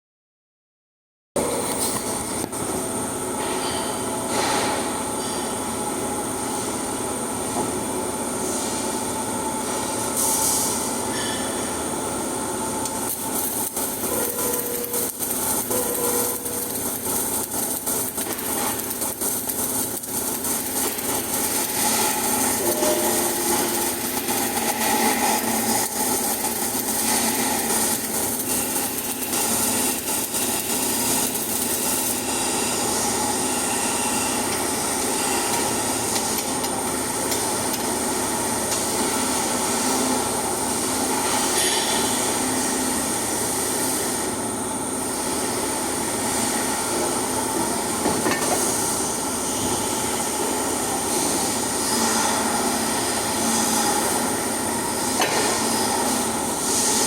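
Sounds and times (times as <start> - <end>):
welding arc crackling hiss: 11.6 - 57.0
thin high whine: 20.6 - 35.9.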